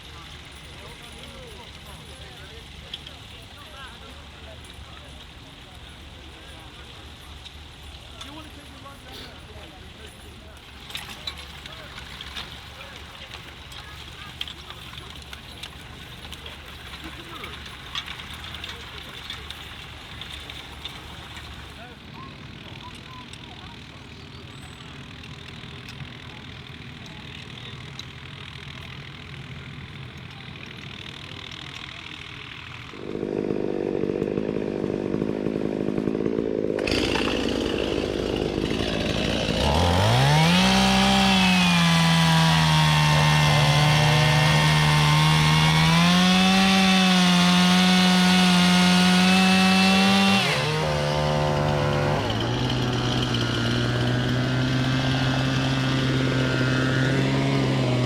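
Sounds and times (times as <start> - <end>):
small engine revving: 29.7 - 58.0.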